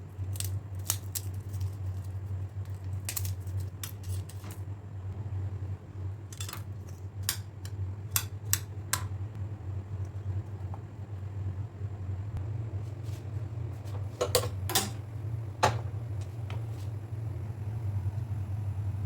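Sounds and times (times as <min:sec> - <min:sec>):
steady low hum: 0:00.0 - 0:19.0
kitchen utensils clinking: 0:13.9 - 0:15.9.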